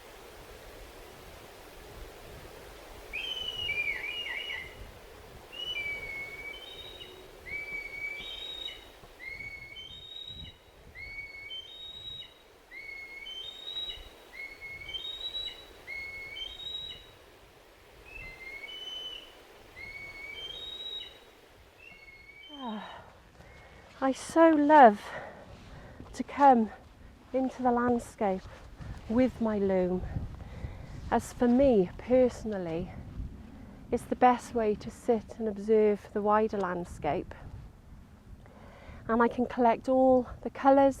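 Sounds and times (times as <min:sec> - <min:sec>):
faint outdoor background noise: 0:00.0 - 0:41.0
songbird whistling: 0:03.1 - 0:04.8, 0:05.5 - 0:17.2, 0:18.0 - 0:22.7.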